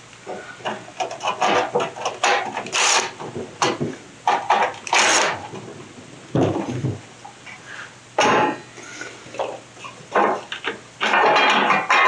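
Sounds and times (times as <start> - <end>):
hand tools clanking on sheet metal: 0.3 - 5.7, 8.2 - 8.7, 11.0 - 12.0
long metal scraping: 0.6 - 6.2.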